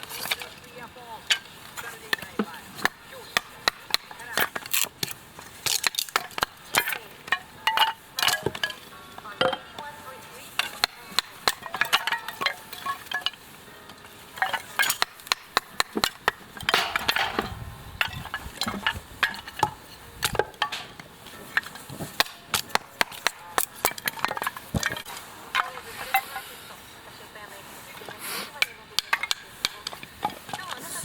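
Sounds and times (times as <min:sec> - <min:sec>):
metal cookware clinking: 0:05.7 - 0:08.8, 0:10.5 - 0:26.4.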